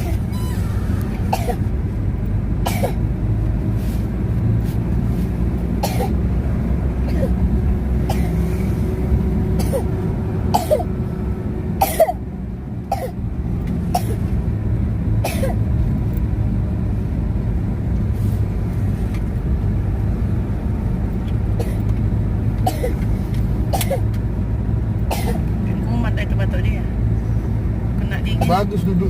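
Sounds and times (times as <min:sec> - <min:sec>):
low engine hum: 0:00.0 - 0:29.0
child coughing: 0:01.3 - 0:01.7, 0:02.6 - 0:03.0, 0:05.8 - 0:06.2, 0:07.1 - 0:07.4, 0:08.1 - 0:08.3, 0:09.6 - 0:09.8, 0:10.5 - 0:10.9, 0:11.8 - 0:12.2, 0:12.9 - 0:13.2, 0:13.9 - 0:14.2, 0:15.2 - 0:15.6, 0:21.6 - 0:21.8, 0:22.6 - 0:23.0, 0:23.7 - 0:24.0, 0:25.1 - 0:25.4.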